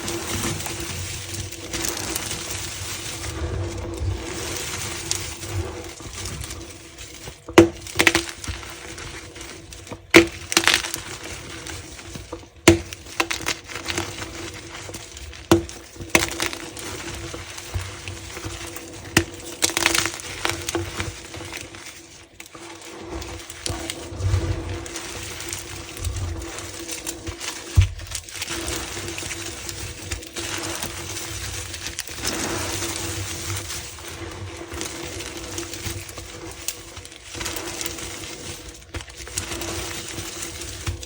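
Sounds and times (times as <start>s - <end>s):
brittle crackling crunch: 0.0s - 41.0s.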